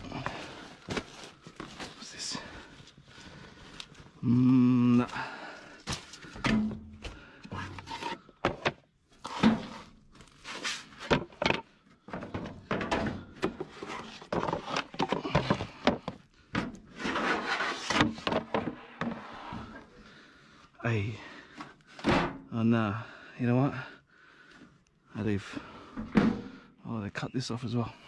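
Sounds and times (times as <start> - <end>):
junk knocking and clattering: 11.1 - 16.8.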